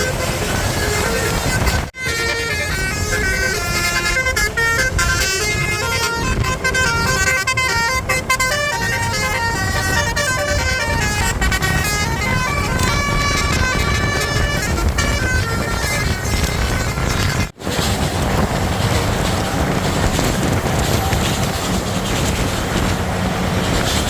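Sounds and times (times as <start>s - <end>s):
bus horn playing a melody: 0.0s - 17.6s.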